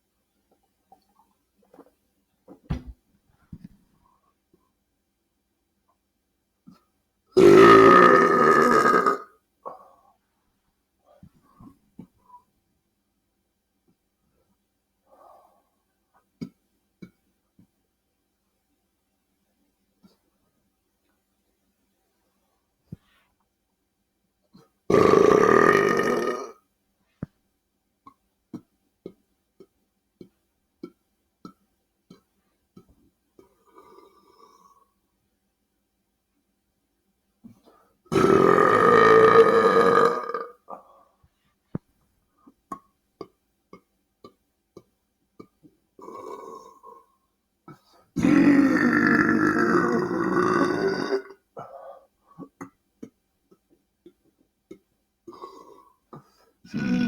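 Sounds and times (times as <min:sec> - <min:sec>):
man belching: 0:07.4 - 0:09.3, 0:24.9 - 0:26.6, 0:38.1 - 0:40.6, 0:48.2 - 0:51.4, 0:56.7 - 0:57.0
rough mouth sound: 0:07.4 - 0:09.3, 0:24.9 - 0:26.6, 0:38.1 - 0:40.6, 0:56.7 - 0:57.0.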